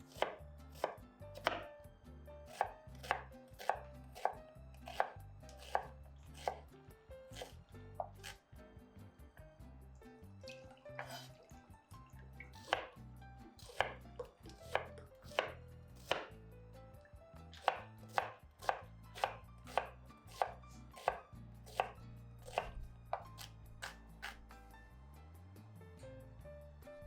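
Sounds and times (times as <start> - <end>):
knife chopping on cutting board: 0.0 - 1.7, 2.5 - 6.7, 7.3 - 8.4, 11.0 - 11.3, 12.6 - 13.0, 13.6 - 16.4, 17.6 - 24.5.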